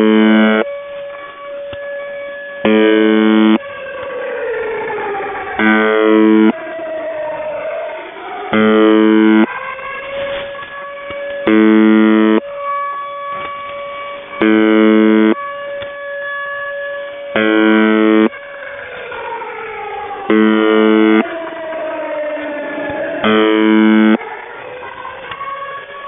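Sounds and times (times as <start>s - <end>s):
harsh radio buzz tones: 0.0s - 0.6s, 2.7s - 3.6s, 5.6s - 6.5s, 8.6s - 9.5s, 11.5s - 12.4s, 14.4s - 15.4s, 17.4s - 18.3s, 20.3s - 21.2s, 23.2s - 24.2s
air-raid siren wailing: 0.0s - 26.0s.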